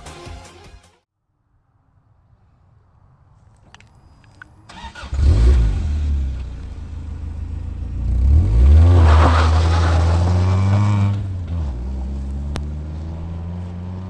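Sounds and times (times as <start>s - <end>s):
car engine starting and running: 4.4s - 14.0s.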